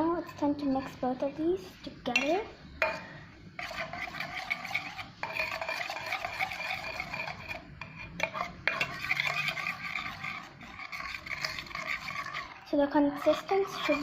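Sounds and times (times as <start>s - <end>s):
spoon scraping in a bowl: 0.3s - 1.5s, 2.1s - 14.0s.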